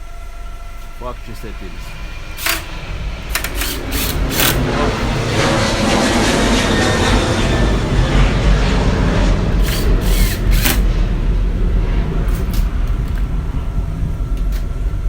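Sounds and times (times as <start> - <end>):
sharp clicks: 2.2 - 5.5, 9.6 - 11.0, 12.2 - 13.3.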